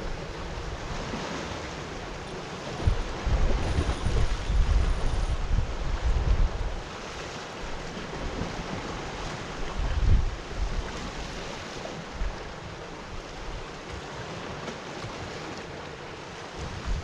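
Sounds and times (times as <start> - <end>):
waves washing against rocks: 0.0 - 17.0
wind buffeting microphone: 2.2 - 6.9, 7.7 - 11.3, 16.6 - 17.0.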